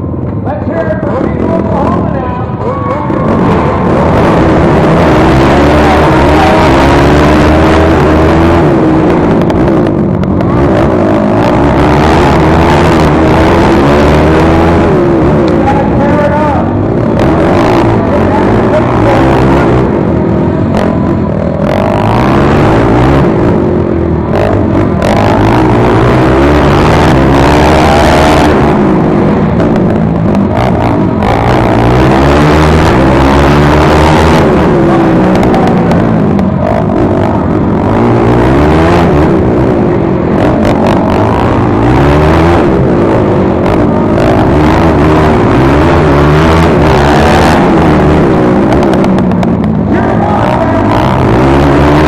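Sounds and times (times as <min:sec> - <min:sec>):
quad engines revving: 0:00.0 - 0:52.0.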